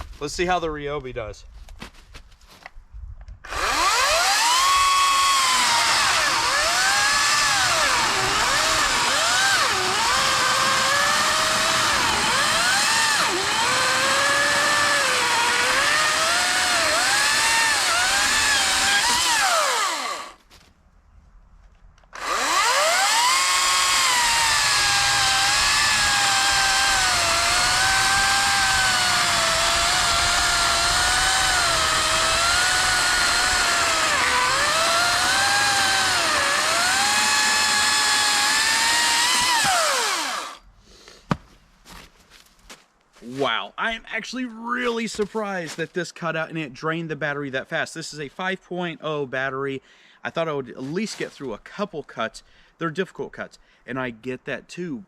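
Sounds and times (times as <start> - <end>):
chainsaw cutting log: 3.4 - 20.4, 22.1 - 40.6.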